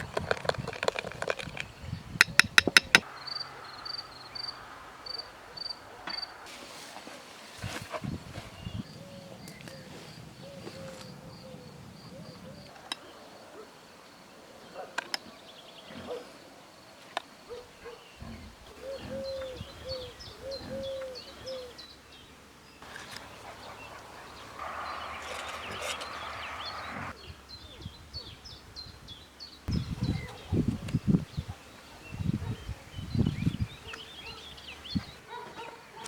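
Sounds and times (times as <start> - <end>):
birds chirping: 0.0 - 6.6, 7.6 - 36.0
rustling: 4.6 - 8.8, 22.8 - 27.1
lower bird call: 17.8 - 22.0, 22.8 - 28.0.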